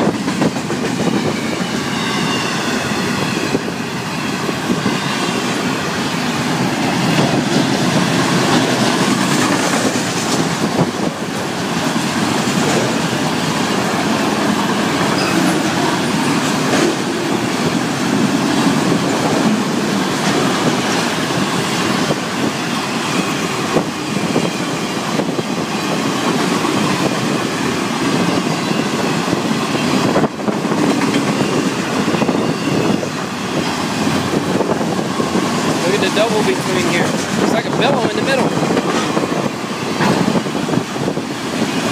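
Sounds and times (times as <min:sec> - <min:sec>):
freight train wheels rumbling: 0:00.0 - 0:41.9
wheels clicking over rail joints: 0:06.6 - 0:22.6.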